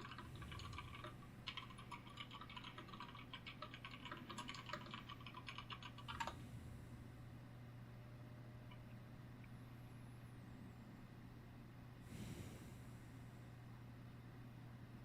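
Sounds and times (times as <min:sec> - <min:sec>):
computer keyboard typing: 0:00.0 - 0:06.4
faint low hum: 0:00.0 - 0:15.0.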